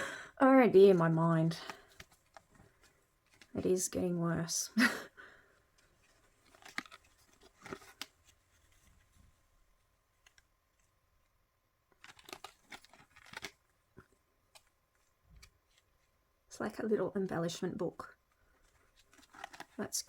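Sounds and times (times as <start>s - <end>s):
paper pages rustling: 0.8s - 3.9s, 5.7s - 10.9s, 11.9s - 16.2s, 18.3s - 20.0s.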